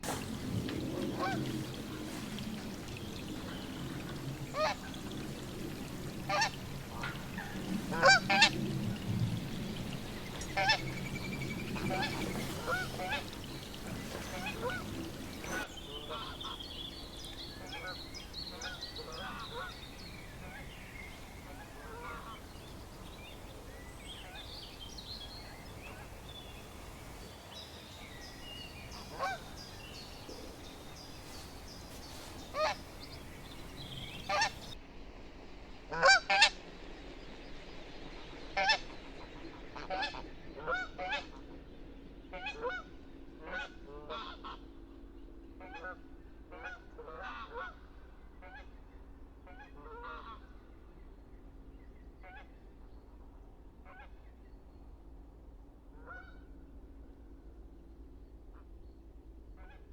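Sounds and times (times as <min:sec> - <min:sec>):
faint high bird calls: 0:00.0 - 0:34.8
geese honking: 0:00.0 - 0:34.8.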